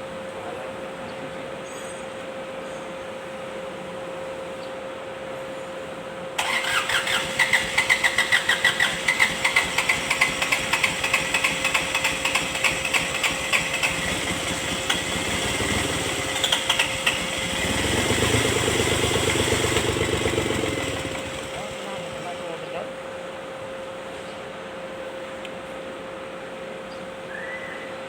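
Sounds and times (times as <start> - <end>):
diesel engine cranking: 6.4 - 22.8
diesel engine running: 6.4 - 23.0.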